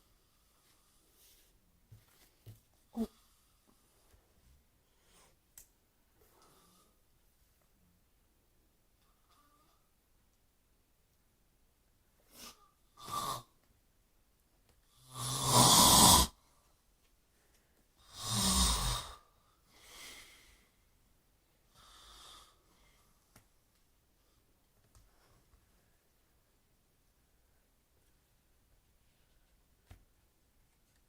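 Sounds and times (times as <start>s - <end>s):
man snoring: 15.0s - 16.4s, 18.1s - 19.2s.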